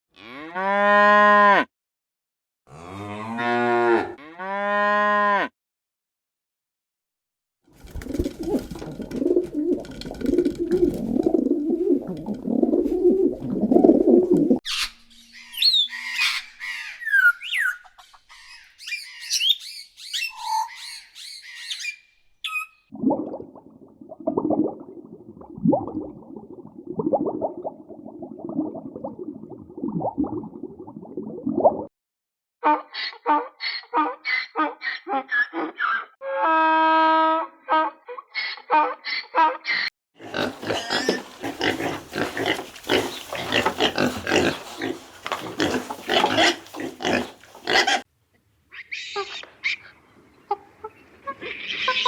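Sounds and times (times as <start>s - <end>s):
birds chirping and whistling: 14.6s - 22.9s.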